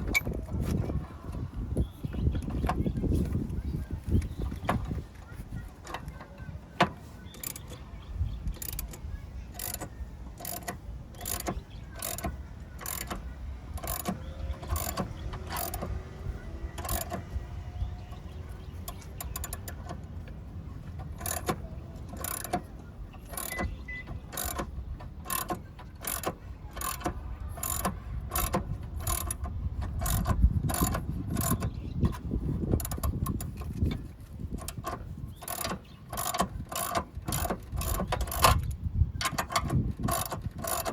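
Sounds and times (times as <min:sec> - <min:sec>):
ratchet wrench clicking: 0:07.3 - 0:07.8, 0:08.4 - 0:17.8, 0:18.7 - 0:20.3, 0:20.9 - 0:34.0, 0:34.6 - 0:40.9.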